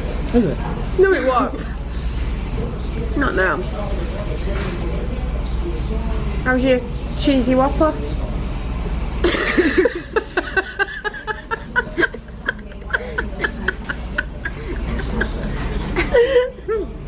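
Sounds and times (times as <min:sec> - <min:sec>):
person snickering: 0:09.2 - 0:16.9.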